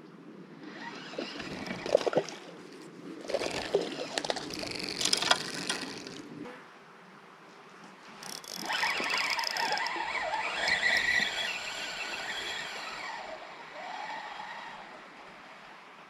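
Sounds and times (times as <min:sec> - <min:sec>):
fishing reel squeaking: 0:00.8 - 0:02.2, 0:03.3 - 0:06.2, 0:08.2 - 0:14.8.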